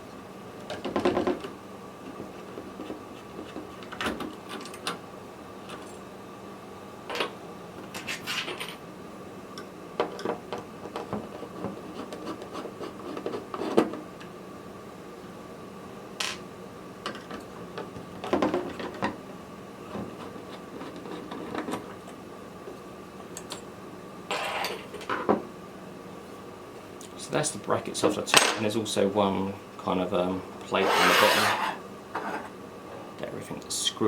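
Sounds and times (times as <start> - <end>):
faint steady hum: 0.0 - 34.0.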